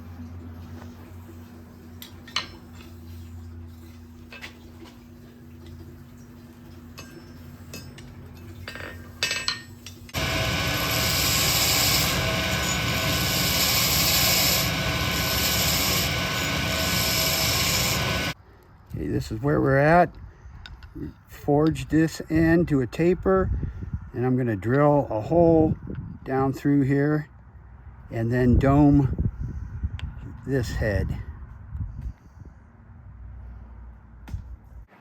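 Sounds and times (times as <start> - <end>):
steady low hum: 0.0 - 26.5
rasping power tool: 10.1 - 18.4.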